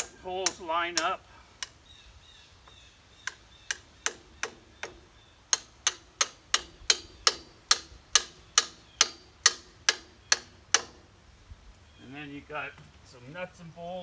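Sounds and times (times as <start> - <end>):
hammer tapping steel pins: 0.0 - 1.8, 3.2 - 11.1.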